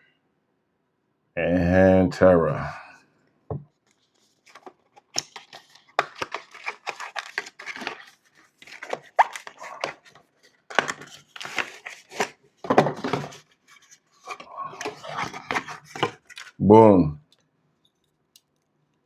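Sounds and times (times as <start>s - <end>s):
cardboard and paper rustling: 3.9s - 16.6s.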